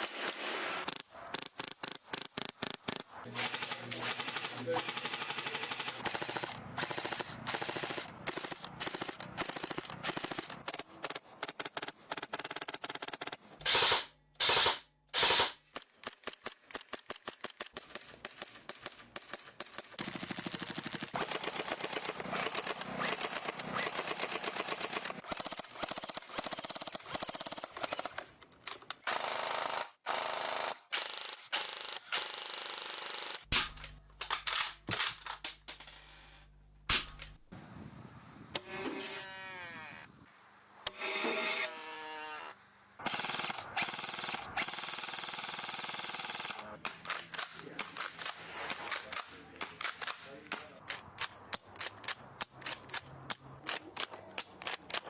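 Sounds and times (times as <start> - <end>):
airsoft guns firing: 0.0 - 28.2.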